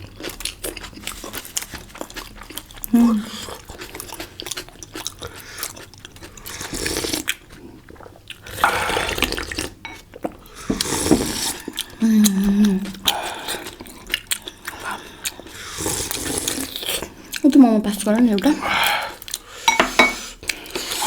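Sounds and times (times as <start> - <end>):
slurping and chewing: 0.0 - 17.6, 18.3 - 21.0
person humming: 12.0 - 13.0.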